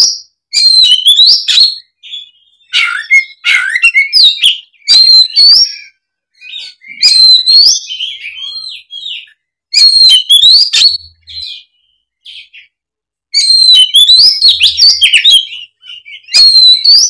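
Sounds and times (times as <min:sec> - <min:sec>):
songbird whistling and chattering: 0:00.0 - 0:12.7, 0:13.4 - 0:17.0.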